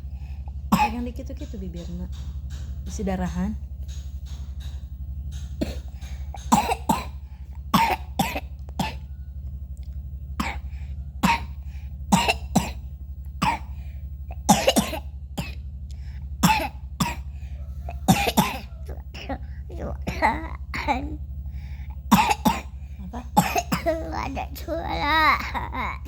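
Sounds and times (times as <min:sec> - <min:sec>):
steady low hum: 0:00.0 - 0:26.0
child coughing: 0:00.7 - 0:01.1, 0:05.6 - 0:09.1, 0:10.4 - 0:12.8, 0:13.4 - 0:13.8, 0:14.4 - 0:15.6, 0:16.4 - 0:17.3, 0:18.0 - 0:26.0.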